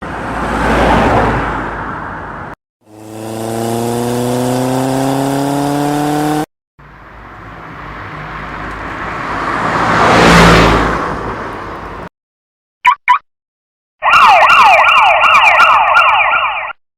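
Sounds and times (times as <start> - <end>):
car passing by: 0.1 - 2.5, 7.4 - 12.0
car engine revving: 2.9 - 6.5.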